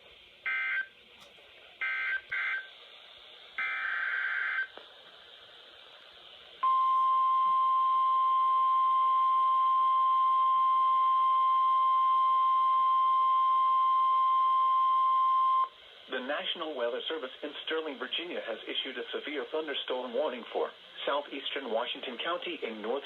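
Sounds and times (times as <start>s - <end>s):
receiver hiss: 0.0s - 23.0s
steady warning alarm tone: 0.5s - 0.9s, 1.8s - 2.7s, 3.6s - 4.7s.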